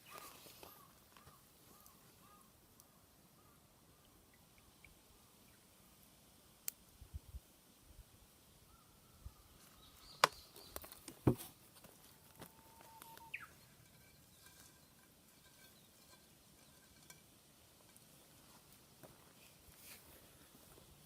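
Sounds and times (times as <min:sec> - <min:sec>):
faint bird calls: 0:00.0 - 0:05.6, 0:08.6 - 0:10.9, 0:12.4 - 0:14.9.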